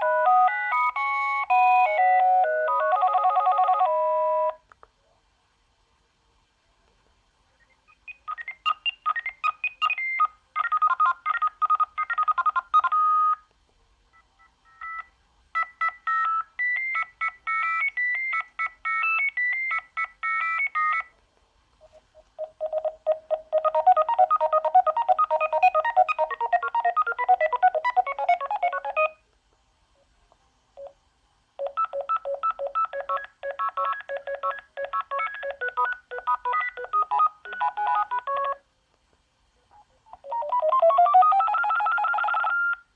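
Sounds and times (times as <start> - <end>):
electronic ringtone melodies: 0.0 - 4.6, 14.7 - 21.1, 22.4 - 29.2, 31.6 - 38.6, 40.2 - 42.9.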